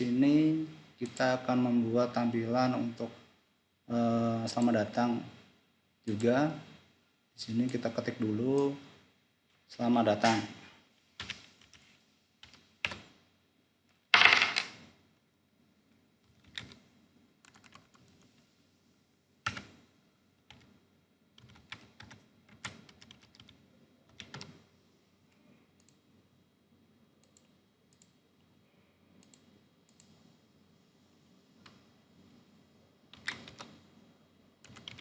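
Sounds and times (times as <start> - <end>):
typing on computer keyboard: 11.2 - 11.8, 12.4 - 13.2, 16.2 - 16.8, 17.4 - 18.2, 19.4 - 19.8, 20.5 - 20.7, 21.4 - 24.6, 33.1 - 33.8, 34.6 - 35.0.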